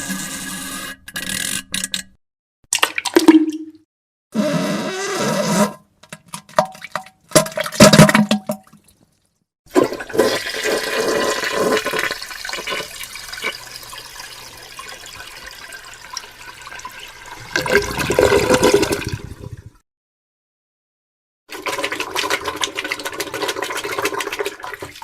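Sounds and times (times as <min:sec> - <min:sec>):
wet sputtering farts: 0:09.7 - 0:12.9, 0:17.6 - 0:19.8
toilet flushing: 0:09.7 - 0:19.8, 0:21.5 - 0:25.0.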